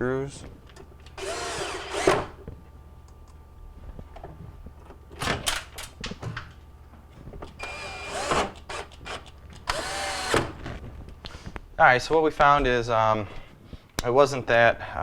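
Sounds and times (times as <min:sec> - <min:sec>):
cordless drill driving screws: 0:01.1 - 0:02.4, 0:07.6 - 0:10.6.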